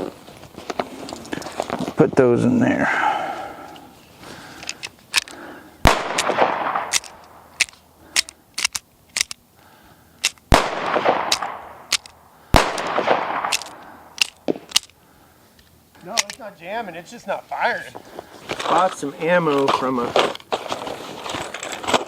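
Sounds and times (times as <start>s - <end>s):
rifle shots with rolling echo: 5.8s - 8.7s, 10.2s - 14.8s
sharp clicks and knocks: 6.9s - 9.4s.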